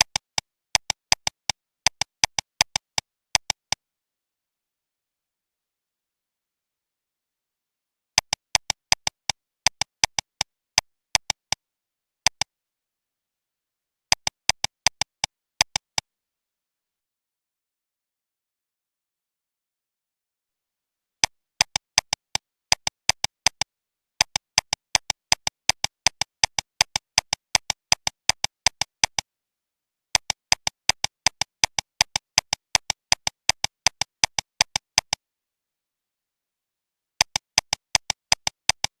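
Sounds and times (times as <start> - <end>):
sharp repeating clicks: 0.0 - 3.8, 8.2 - 11.6, 12.2 - 12.5, 14.1 - 16.0, 21.2 - 29.3, 30.1 - 35.2, 37.2 - 39.0.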